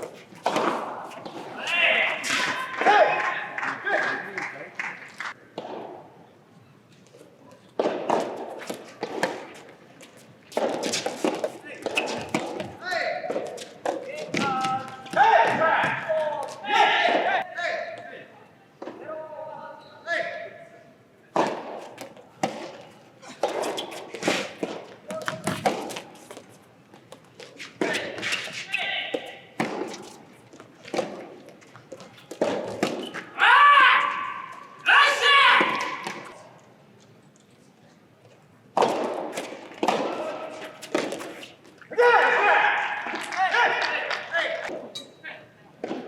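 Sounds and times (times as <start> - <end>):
rackets striking ball: 0.0 - 3.0, 5.5 - 6.0, 7.7 - 9.7, 10.5 - 17.2, 21.3 - 33.4, 38.8 - 41.8
sharp knocks and thuds echoing: 21.4 - 22.8, 29.6 - 30.0, 38.8 - 41.2
ball bouncing: 23.4 - 28.1, 29.1 - 33.3.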